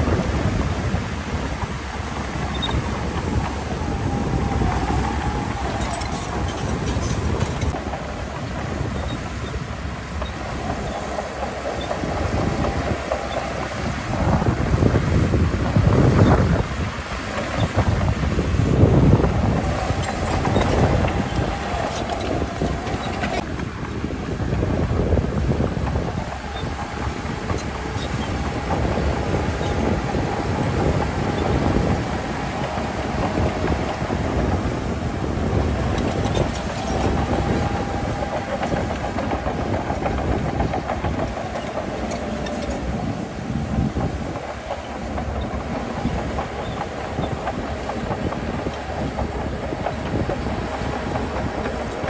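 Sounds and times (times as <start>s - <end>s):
diesel engine under load: 0.0s - 52.0s
steel tracks clattering: 0.0s - 52.0s.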